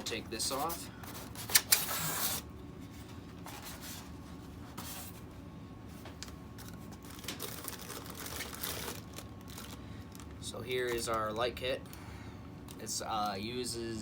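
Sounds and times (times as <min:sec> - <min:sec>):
packing material scraping rustle: 0:00.4 - 0:02.4, 0:06.6 - 0:10.3.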